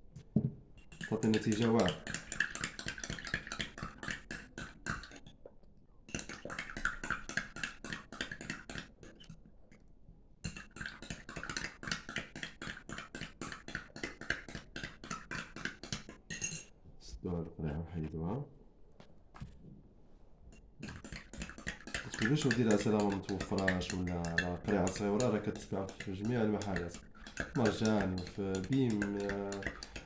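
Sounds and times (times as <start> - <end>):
spoon clinking against glass: 16.3 - 16.7, 20.9 - 30.0.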